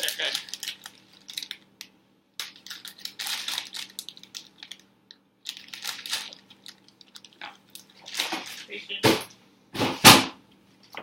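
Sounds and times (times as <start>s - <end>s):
plastic packaging crinkling: 0.0s - 9.0s.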